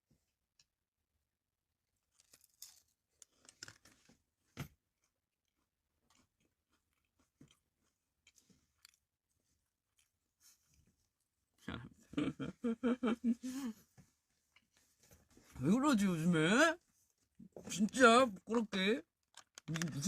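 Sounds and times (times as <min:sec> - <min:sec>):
chewing and crunching: 0:05.0 - 0:11.1, 0:19.2 - 0:20.0.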